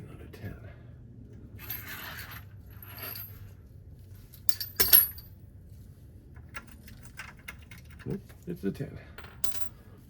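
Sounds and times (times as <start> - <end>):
metal tools clinking and rattling: 1.6 - 3.6, 4.4 - 5.3.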